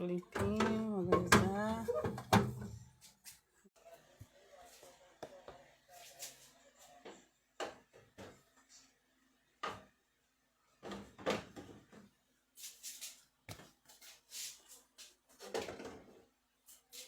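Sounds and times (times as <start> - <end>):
containers knocking and clattering: 0.2 - 2.8.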